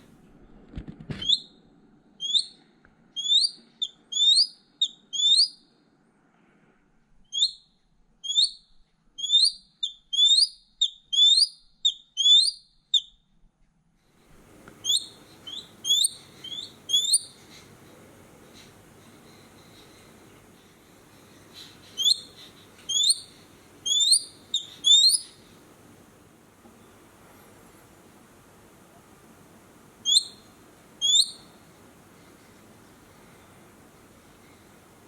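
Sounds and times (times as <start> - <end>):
eagle chirping calls: 2.2 - 2.6, 3.2 - 5.6, 9.2 - 11.6, 12.2 - 13.1, 14.8 - 17.8, 21.4 - 25.5, 30.0 - 31.6.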